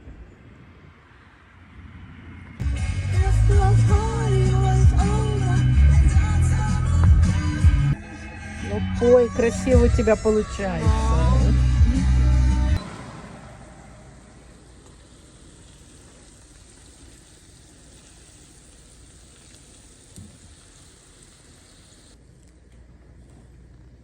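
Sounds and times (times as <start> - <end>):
person singing: 2.6 - 12.8
faint hiss: 12.8 - 22.5.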